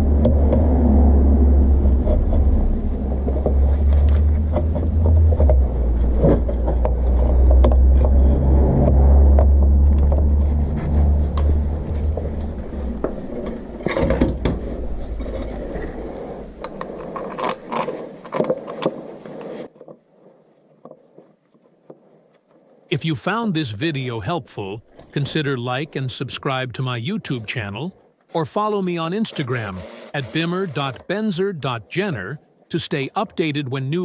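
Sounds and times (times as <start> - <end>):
vehicle rumbling: 0.0 - 17.9.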